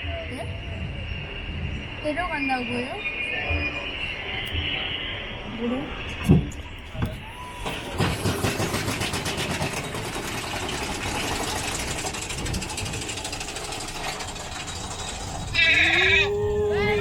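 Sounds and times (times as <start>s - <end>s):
roller coaster clattering on track: 6.0s - 17.0s.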